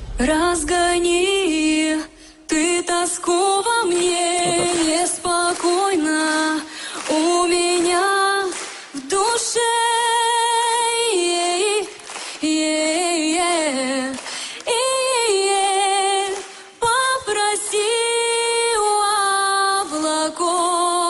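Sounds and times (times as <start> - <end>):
woman singing a cappella: 0.1 - 21.0
short breaths: 6.7 - 7.1, 14.2 - 14.6.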